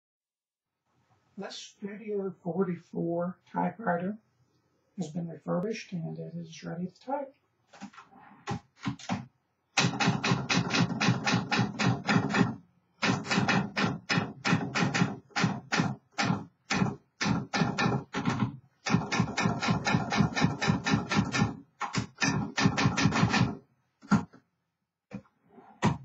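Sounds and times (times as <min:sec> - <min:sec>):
manual typewriter key strikes: 0:09.8 - 0:23.6.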